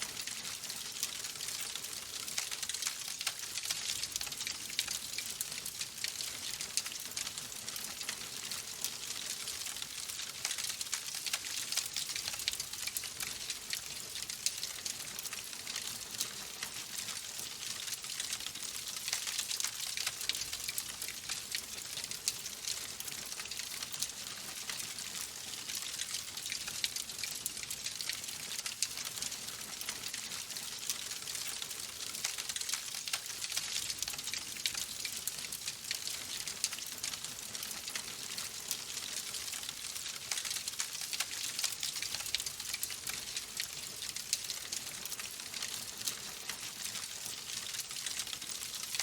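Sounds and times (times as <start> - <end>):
logs burning in fireplace: 0.1 - 49.0.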